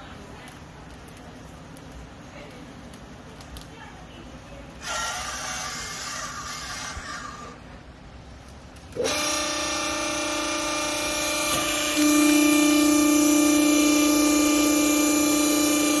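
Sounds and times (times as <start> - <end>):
hydraulic pump whine: 8.9 - 16.0.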